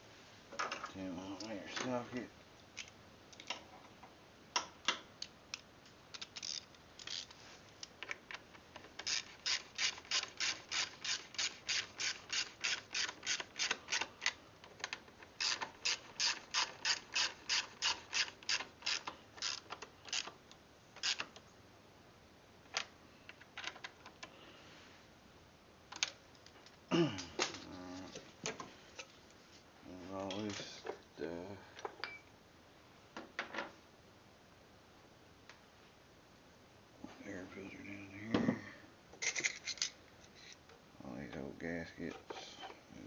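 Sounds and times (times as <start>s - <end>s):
socket ratchet clicking: 9.0s - 14.4s, 15.4s - 20.4s, 21.0s - 21.3s.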